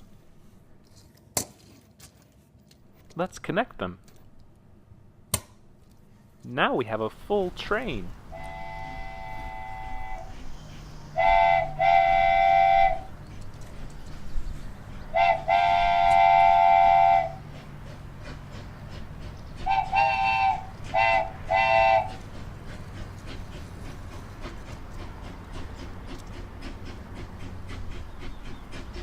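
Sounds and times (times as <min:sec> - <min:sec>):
train whistle blasts: 0:08.3 - 0:10.5, 0:11.1 - 0:13.2, 0:15.1 - 0:17.5, 0:19.6 - 0:22.2.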